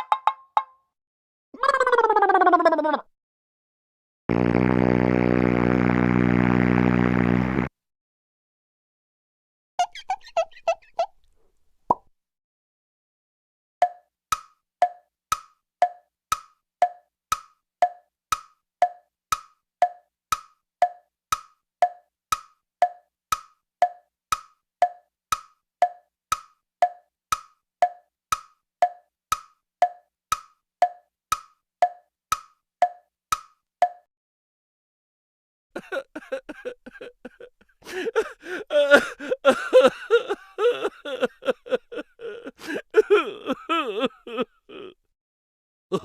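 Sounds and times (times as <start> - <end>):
hollow wooden knocks: 0.0 - 0.8.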